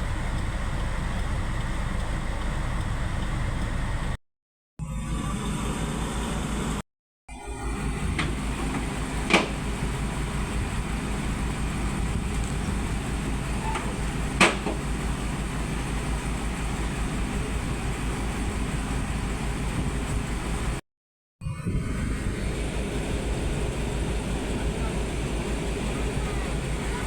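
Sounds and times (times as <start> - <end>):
heavy diesel engine running: 0.0 - 4.2, 4.8 - 6.8, 7.5 - 20.8, 21.6 - 27.0
sharp knocks: 13.8 - 14.9.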